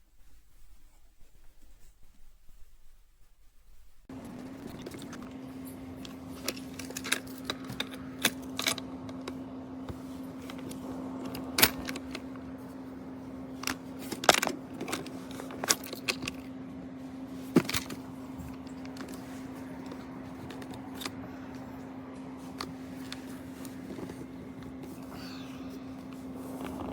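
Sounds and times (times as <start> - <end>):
steady low hum: 0.0 - 26.9.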